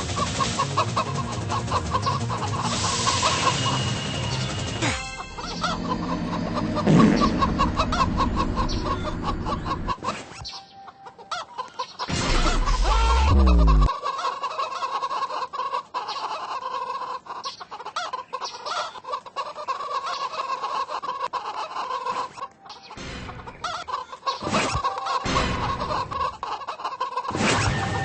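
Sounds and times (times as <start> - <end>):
hens clucking: 0.0 - 4.1, 5.2 - 27.3
low noises: 5.3 - 10.0, 12.1 - 13.9.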